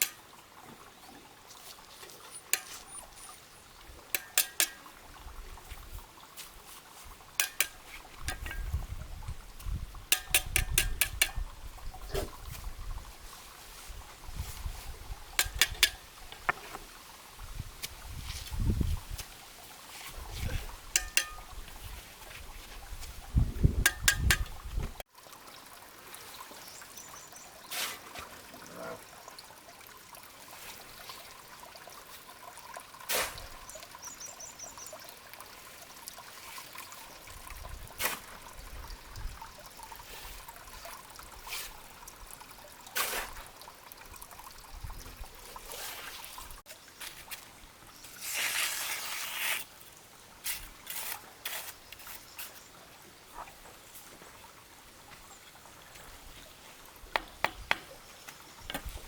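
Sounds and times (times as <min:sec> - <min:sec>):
faint trickle of liquid: 0:00.0 - 0:23.7, 0:24.5 - 0:49.2.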